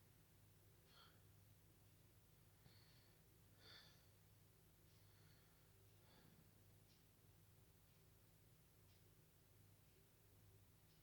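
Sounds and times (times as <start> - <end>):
low steady hum: 0.0 - 11.0
faint short breaths: 2.6 - 4.2.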